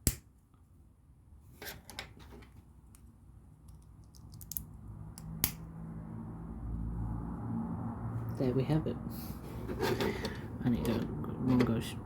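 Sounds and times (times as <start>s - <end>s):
plastic bricks clicking together: 3.7s - 4.6s.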